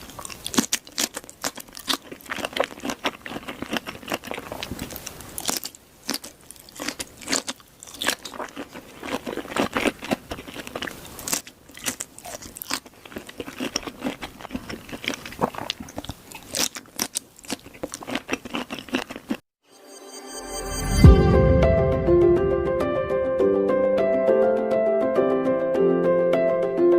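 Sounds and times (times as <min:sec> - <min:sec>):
crunchy eating: 0:00.0 - 0:19.4.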